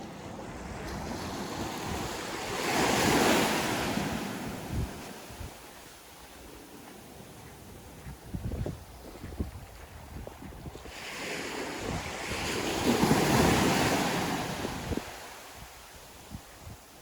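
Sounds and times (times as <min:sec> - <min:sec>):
ocean wave breaking on beach: 0:00.0 - 0:05.6, 0:10.9 - 0:15.6.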